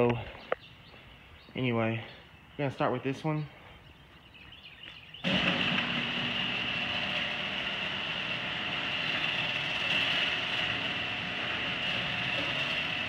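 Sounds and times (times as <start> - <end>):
garage door opener motor whining: 5.2 - 13.0.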